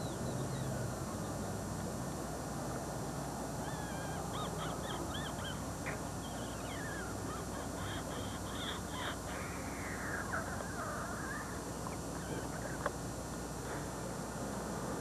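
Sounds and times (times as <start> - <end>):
birds chirping: 0.0 - 1.6, 3.6 - 13.6
steady background hiss: 0.0 - 15.0.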